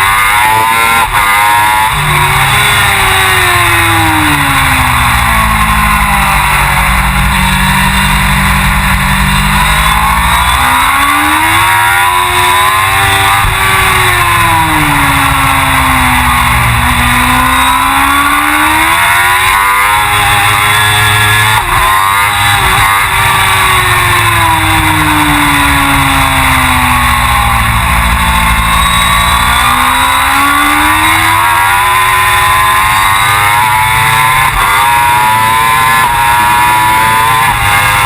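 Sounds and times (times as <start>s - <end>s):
racing motorcycle engine: 0.0s - 38.0s.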